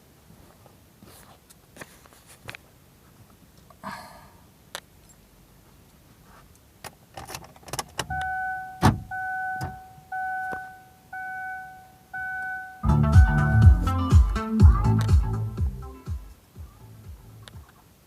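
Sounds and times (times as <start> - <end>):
dashboard warning chime beeping: 8.0 - 14.1.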